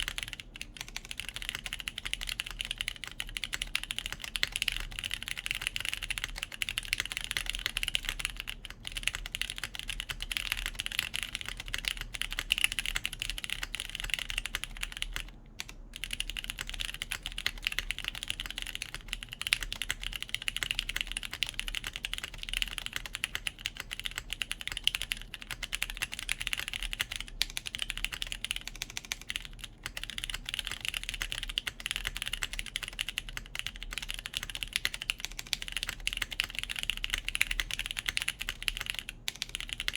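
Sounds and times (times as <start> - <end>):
typing on mechanical keyboard: 0.0 - 39.9.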